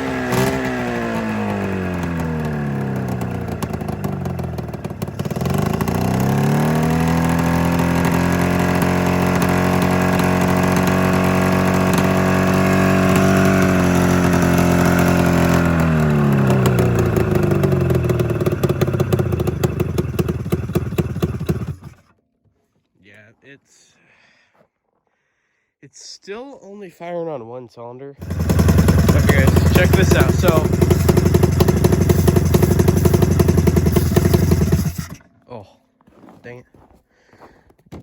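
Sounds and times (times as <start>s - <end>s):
snowmobile engine revving: 0.0s - 22.0s, 28.2s - 35.3s.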